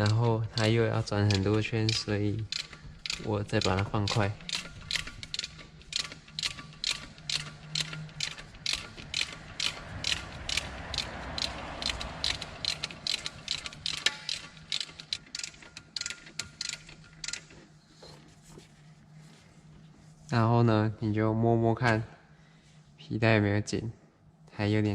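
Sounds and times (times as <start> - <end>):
ratchet wrench clicking: 0.0 - 17.6.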